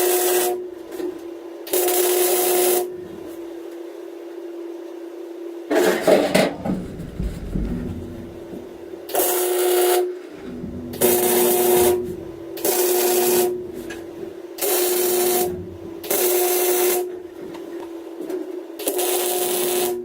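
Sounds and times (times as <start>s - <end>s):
welder buzzing hiss: 11.0s - 17.2s, 18.8s - 20.0s.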